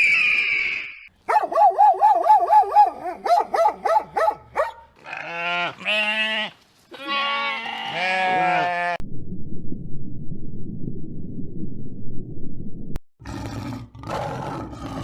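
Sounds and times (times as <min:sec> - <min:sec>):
livestock bleating: 0:05.0 - 0:09.0.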